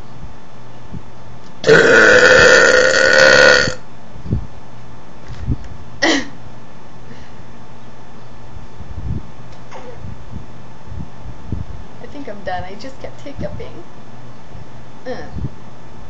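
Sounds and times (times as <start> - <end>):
woman burping: 1.6 - 3.8, 6.0 - 6.4
woman hiccuping: 6.0 - 6.4.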